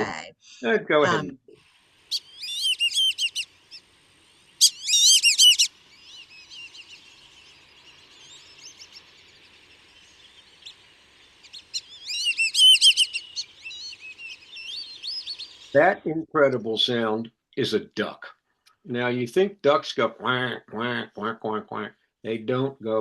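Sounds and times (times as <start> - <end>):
ducks whistling calls: 2.0 - 15.9.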